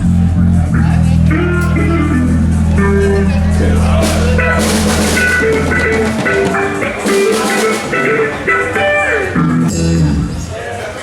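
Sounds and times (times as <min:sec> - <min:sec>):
held bass note: 0:00.0 - 0:07.4
cymbal hits: 0:03.2 - 0:09.3.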